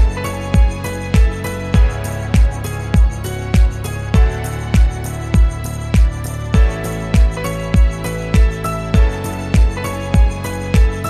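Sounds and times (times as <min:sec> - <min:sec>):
low drum beat: 0:00.0 - 0:10.9.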